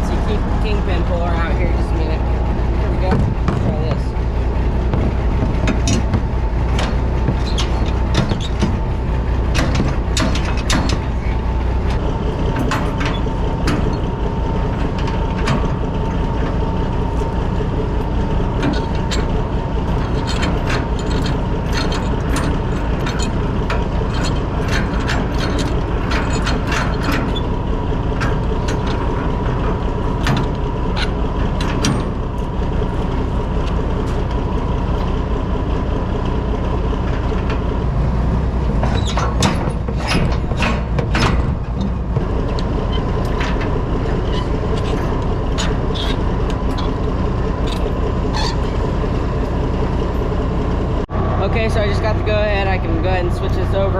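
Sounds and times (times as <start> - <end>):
truck engine idling: 0.0 - 53.9
metallic clicks and clatter: 0.1 - 27.5, 37.0 - 50.4.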